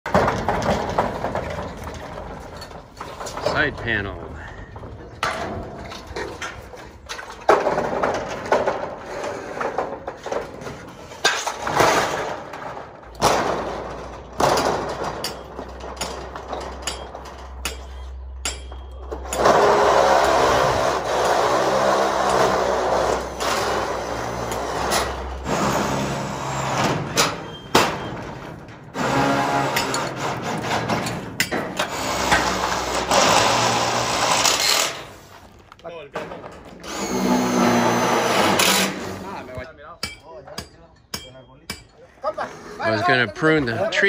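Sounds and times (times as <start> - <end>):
sheet metal knocking and clattering: 0.1 - 4.0, 5.2 - 19.5, 26.7 - 32.5
metal scraping and rattling: 0.1 - 39.7.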